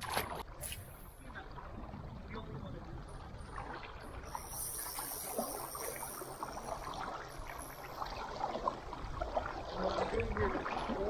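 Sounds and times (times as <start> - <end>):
river water lapping: 3.4 - 11.0.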